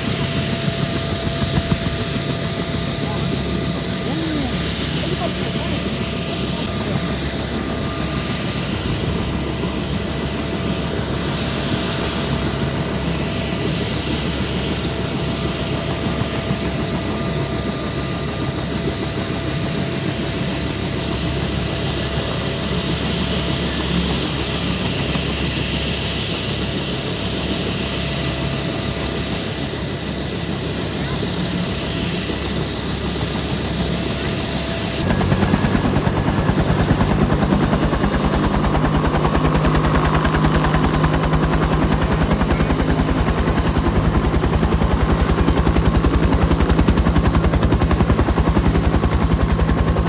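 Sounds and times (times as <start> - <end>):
helicopter rotor and engine: 0.0 - 50.0.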